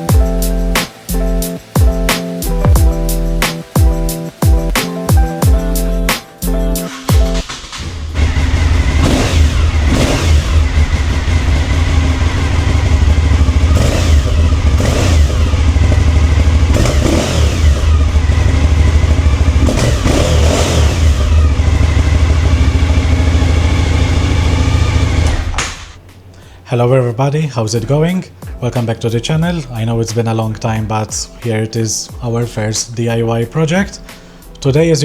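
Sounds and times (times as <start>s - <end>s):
motorcycle engine revving: 7.0s - 26.2s.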